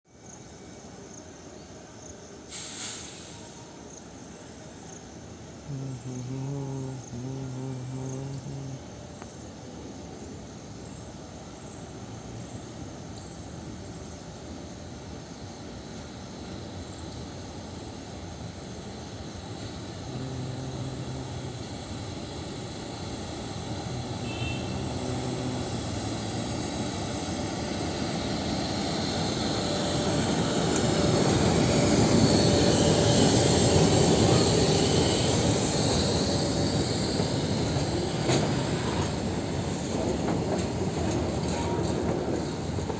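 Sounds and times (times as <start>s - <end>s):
diesel locomotive engine running: 5.5s - 10.7s, 11.4s - 42.9s.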